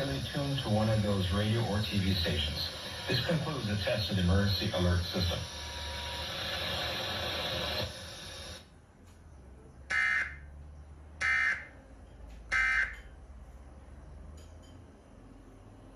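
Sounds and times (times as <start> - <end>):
hiss: 1.8 - 8.7.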